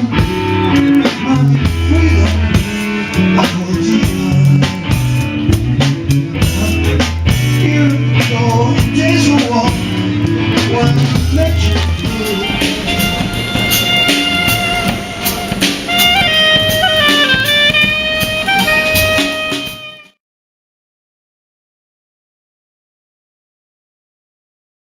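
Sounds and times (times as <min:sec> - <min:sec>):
drum beat with heavy bass: 0:00.0 - 0:20.2
held high melody line: 0:10.6 - 0:20.2.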